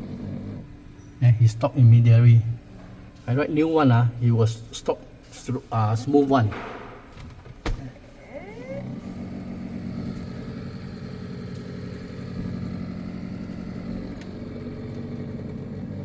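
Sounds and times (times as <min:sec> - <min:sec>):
freezer fan motor humming: 0:00.0 - 0:02.7, 0:03.3 - 0:16.0.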